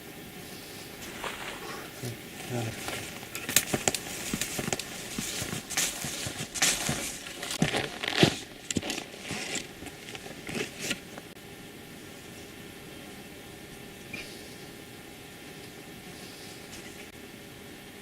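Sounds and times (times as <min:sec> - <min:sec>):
rustling and crackling: 0:00.7 - 0:11.4.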